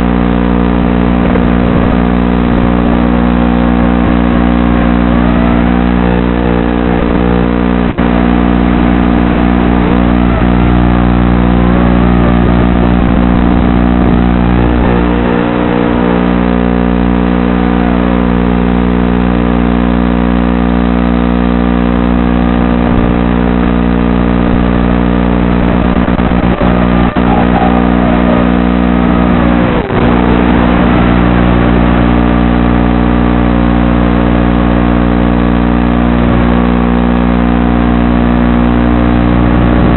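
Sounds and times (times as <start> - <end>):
drone motors whining: 0.0 - 19.5, 22.7 - 33.3.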